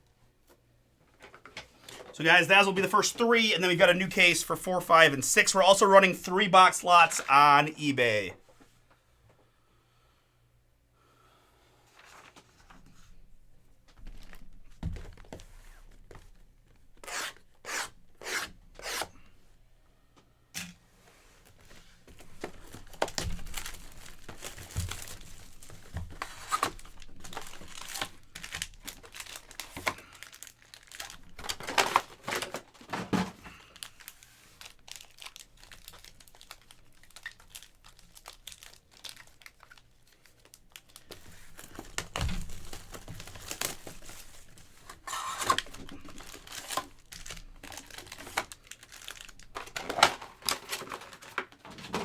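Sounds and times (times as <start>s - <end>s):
plastic wrapping crinkling and tearing: 22.1s - 32.8s, 33.5s - 52.0s.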